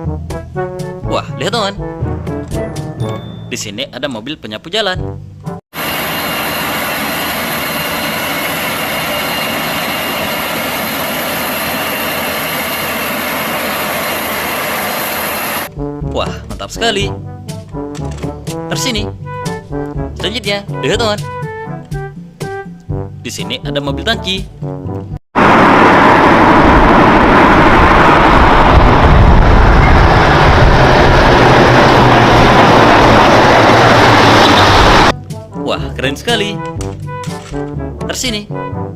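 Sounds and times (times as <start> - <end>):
street sweeper engine: 5.8 - 15.7, 25.4 - 35.2
vehicle engine rumbling: 25.4 - 35.2.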